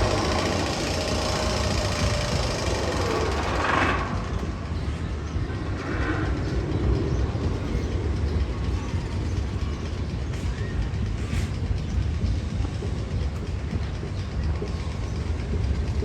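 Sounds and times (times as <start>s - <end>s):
roller coaster squeal: 0.0s - 12.1s
roller coaster rumbling and clattering: 0.0s - 16.0s.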